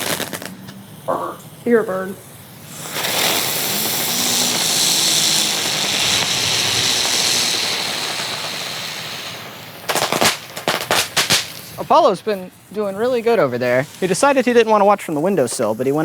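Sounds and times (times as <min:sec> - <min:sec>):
firework pops and cracks: 0:00.0 - 0:01.2, 0:02.6 - 0:12.4
firework hissing sparks: 0:00.0 - 0:16.0.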